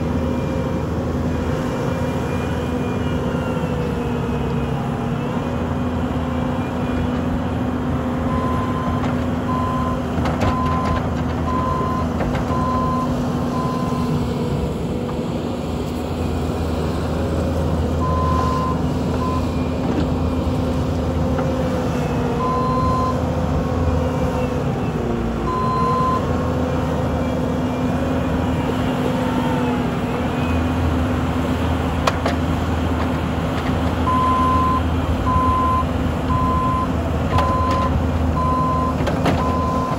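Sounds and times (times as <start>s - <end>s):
diesel engine running: 0.0s - 39.9s
backup alarm beeping: 34.1s - 39.9s.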